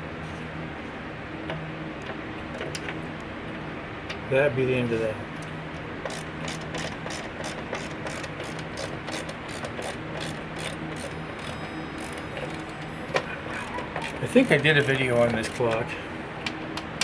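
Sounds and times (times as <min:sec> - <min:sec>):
steady low hum: 0:00.0 - 0:17.0
ratcheting screwdriver clicking: 0:06.1 - 0:12.6, 0:13.6 - 0:15.8.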